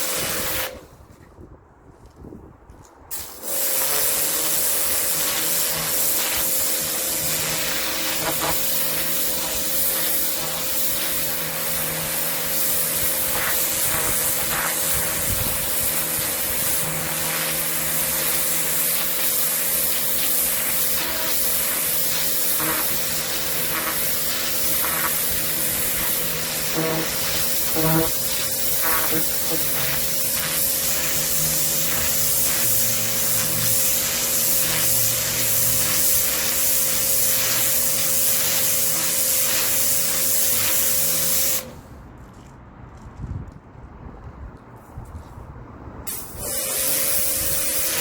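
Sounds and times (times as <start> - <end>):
pressure washer jet hissing: 0.0 - 0.8, 3.1 - 41.8, 46.1 - 48.0
pump motor humming: 19.6 - 39.8.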